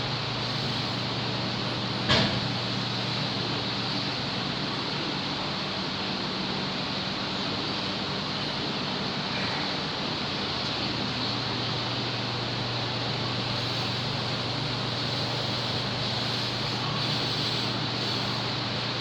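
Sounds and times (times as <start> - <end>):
machine hiss: 0.0 - 4.3, 10.4 - 19.0
low machine hum: 0.0 - 19.0.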